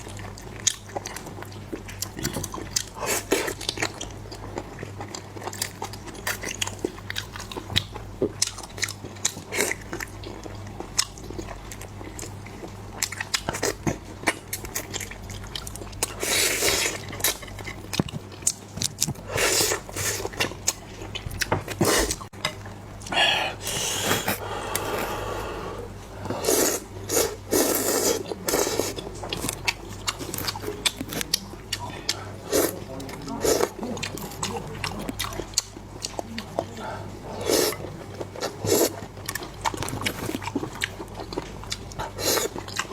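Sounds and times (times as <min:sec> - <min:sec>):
chewing and biting: 0:26.7 - 0:36.8, 0:37.4 - 0:42.9.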